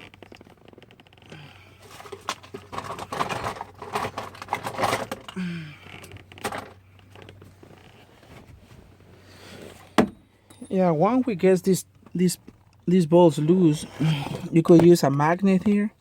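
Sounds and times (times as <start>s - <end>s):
small metal tools clicking and rattling: 0.0s - 7.4s.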